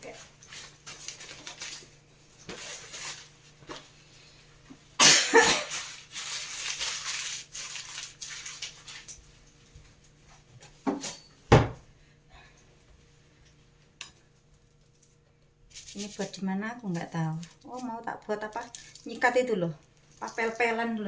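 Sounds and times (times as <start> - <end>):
shopping bags rustling: 0.0 - 3.9, 5.4 - 9.2
items clattering: 17.5 - 21.0.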